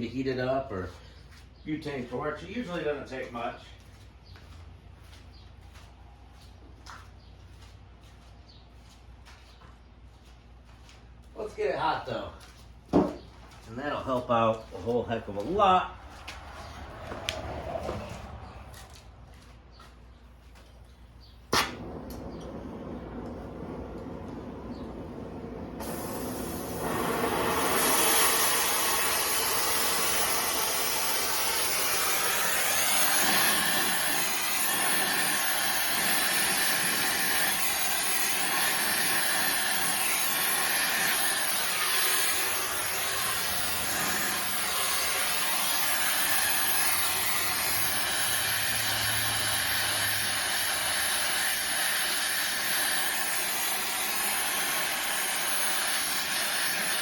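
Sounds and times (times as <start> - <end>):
gas torch flame hissing: 21.5 - 57.0.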